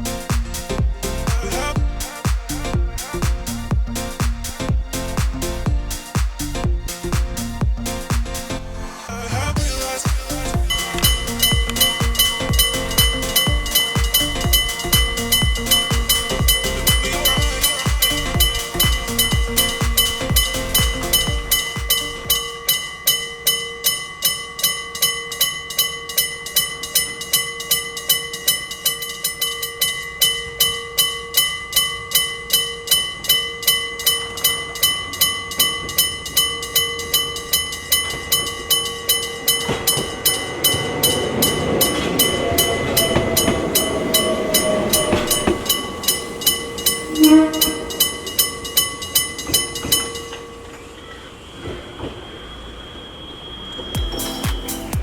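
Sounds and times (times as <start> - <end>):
train passing with whine: 0.0 - 27.2, 27.8 - 55.0
level crossing bells ringing: 10.0 - 51.8
train horn blast: 41.8 - 50.1.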